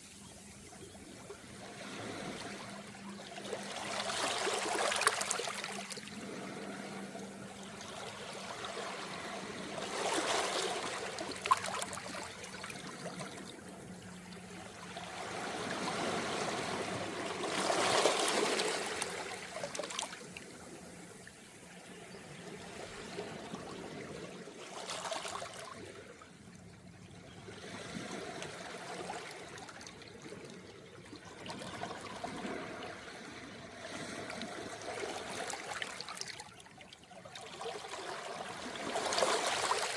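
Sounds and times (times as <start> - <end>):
waves washing over pebbles: 3.6 - 7.4, 15.2 - 20.3.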